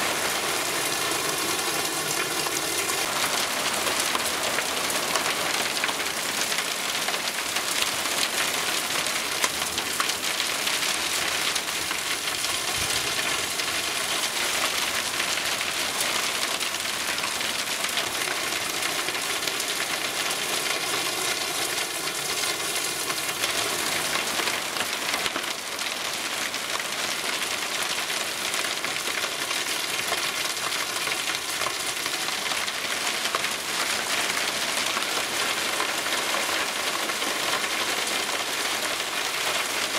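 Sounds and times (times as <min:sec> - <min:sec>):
heavy rain hissing: 0:00.0 - 0:26.6
hailstones ticking: 0:00.0 - 0:39.9.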